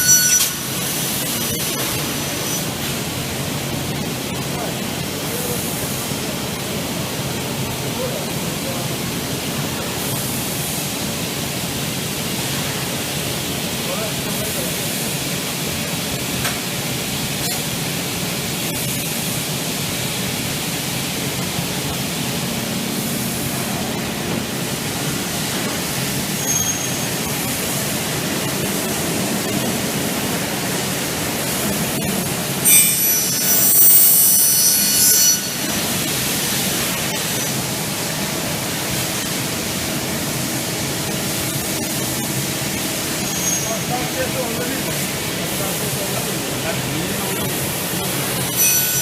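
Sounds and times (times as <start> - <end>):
saw cutting aluminium whine: 0.0 - 0.8, 32.6 - 35.8, 48.4 - 49.0
workshop machine noise: 0.0 - 49.0.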